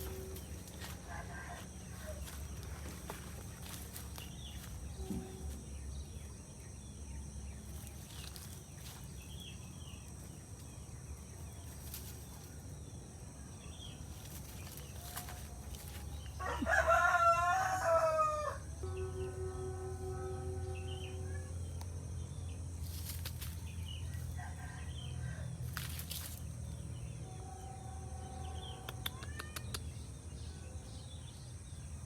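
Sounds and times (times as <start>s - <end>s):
rooster crowing: 0.0s - 3.8s, 15.0s - 21.7s, 24.0s - 25.9s
faint bird chirps: 27.2s - 31.2s.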